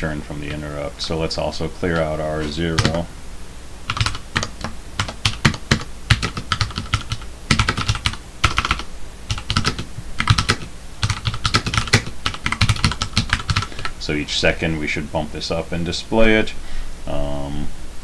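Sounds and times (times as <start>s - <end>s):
typing on computer keyboard: 2.7s - 3.1s, 3.9s - 13.9s.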